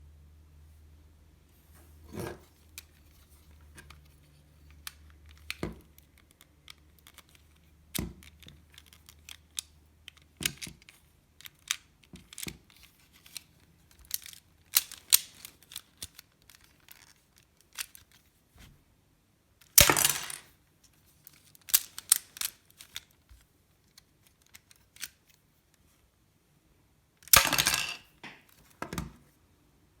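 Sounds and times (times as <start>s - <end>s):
plastic toy pistol clicking and rattling: 4.8s - 18.2s, 21.3s - 23.2s
plastic clattering: 27.3s - 29.1s.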